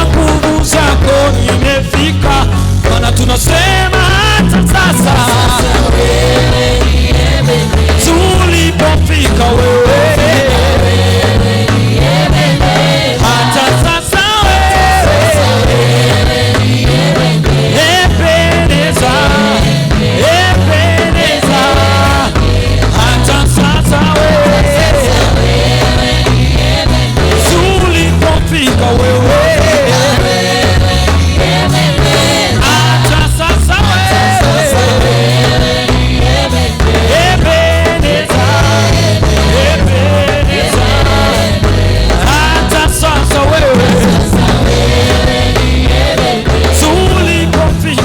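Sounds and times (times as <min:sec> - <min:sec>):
person singing melody: 0:00.0 - 0:10.9, 0:42.0 - 0:48.0
bass line: 0:00.0 - 0:48.0
voices singing gospel song: 0:00.0 - 0:48.0.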